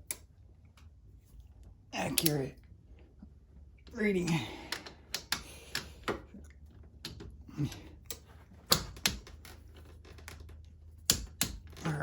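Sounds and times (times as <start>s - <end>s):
metallic clicks and knocks of tools: 4.7s - 6.2s.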